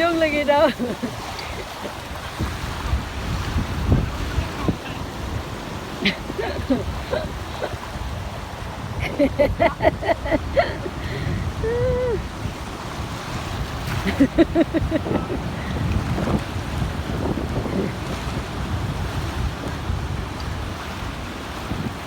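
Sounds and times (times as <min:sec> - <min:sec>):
surf: 0:00.0 - 0:22.0
wind on microphone: 0:00.0 - 0:22.0
person laughing: 0:00.6 - 0:01.9, 0:06.0 - 0:07.8, 0:09.0 - 0:12.3, 0:14.0 - 0:15.8.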